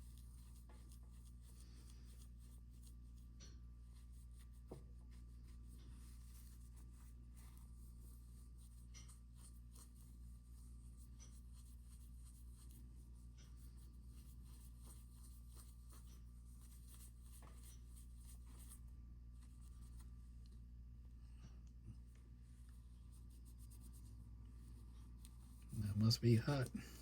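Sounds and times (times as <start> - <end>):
low room hum: 0.0 - 27.0
small parts clicking and scratching: 5.7 - 18.8.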